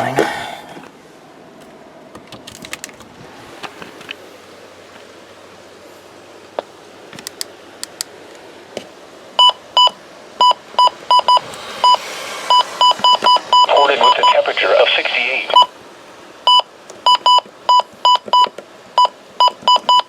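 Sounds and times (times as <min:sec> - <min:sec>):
handling clicks and taps: 0:07.1 - 0:08.1.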